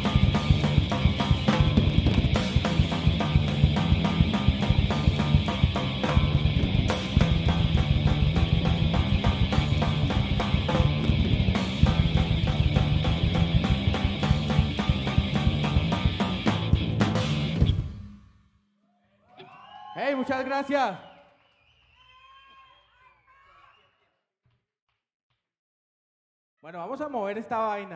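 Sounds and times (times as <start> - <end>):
live rock band playing: 0.0 - 17.9
drum kit beat: 0.0 - 18.2.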